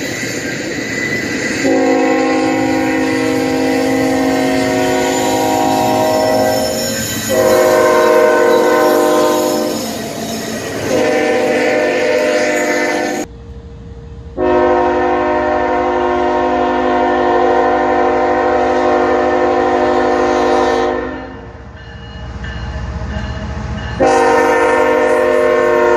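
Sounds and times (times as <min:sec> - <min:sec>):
locomotive air horn blasts: 0:01.6 - 0:09.9, 0:10.8 - 0:13.3, 0:14.4 - 0:21.5, 0:24.0 - 0:25.9.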